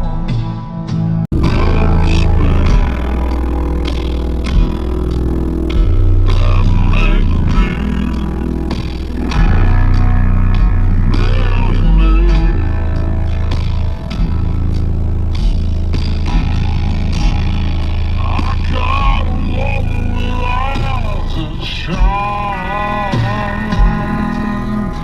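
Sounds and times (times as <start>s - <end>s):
guitar music through car speakers: 0.0s - 25.0s
subwoofer bass notes: 0.0s - 25.0s.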